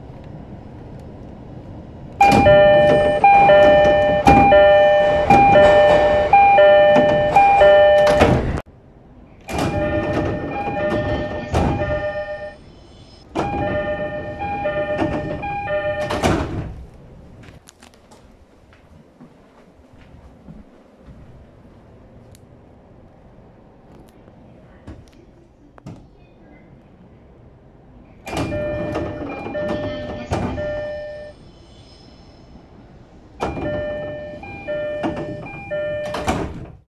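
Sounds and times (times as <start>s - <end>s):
two-note train door chime: 2.2s - 8.5s, 33.4s - 36.4s.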